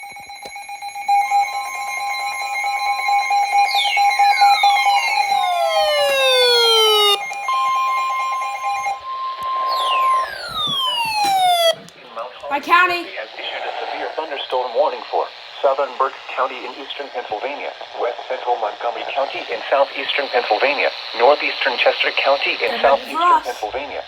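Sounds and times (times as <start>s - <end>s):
falling whistle-like sweeps: 0.9s - 11.8s
two steady high alert tones: 0.9s - 11.9s.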